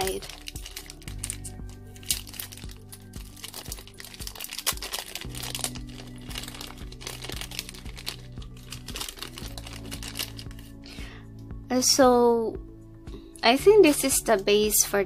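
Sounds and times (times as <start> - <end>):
plastic packaging crinkling: 0.0 - 10.8
background music with sustained chords: 0.0 - 15.0.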